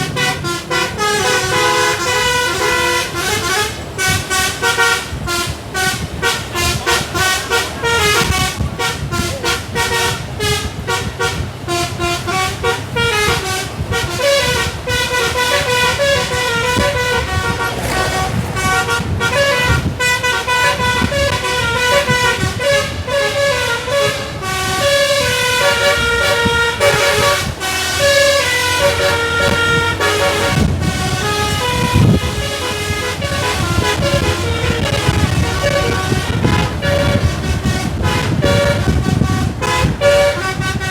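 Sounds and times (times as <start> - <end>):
musical air horn playing tune: 0.0 - 40.9
low rumble: 15.7 - 23.2.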